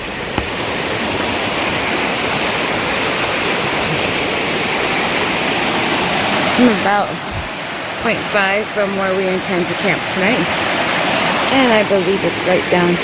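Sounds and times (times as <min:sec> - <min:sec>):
stream rushing over rocks: 0:00.0 - 0:13.0.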